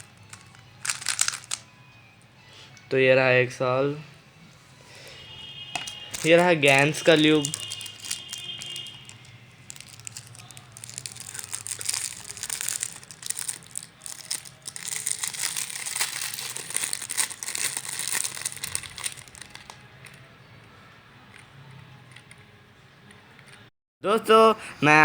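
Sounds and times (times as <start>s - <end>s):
plastic packaging crinkling: 0.0s - 1.7s, 5.8s - 19.8s.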